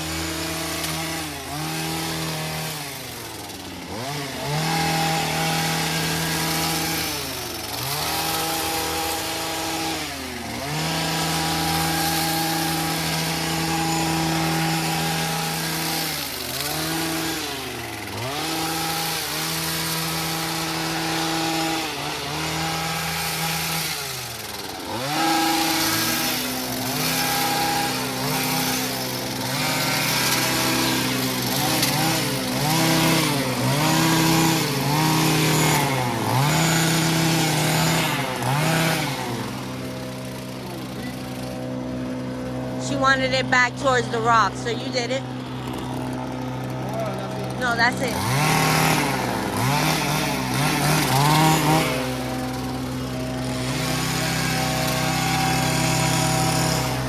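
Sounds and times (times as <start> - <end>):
small engine revving: 0.0 - 57.0
second engine steady lower pitch: 22.4 - 57.0.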